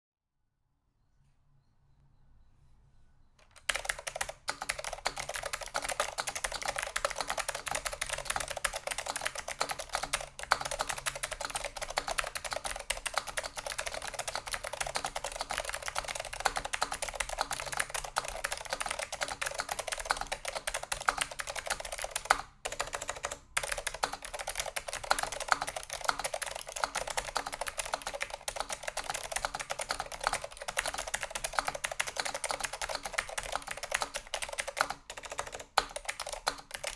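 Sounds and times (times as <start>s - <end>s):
fast clicky keyboard typing: 3.4s - 36.9s.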